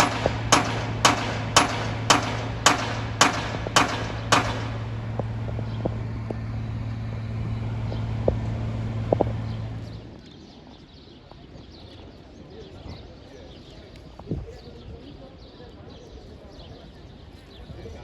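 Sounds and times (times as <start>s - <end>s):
sharp knocks: 0.0s - 6.4s
steady low hum: 0.0s - 10.2s.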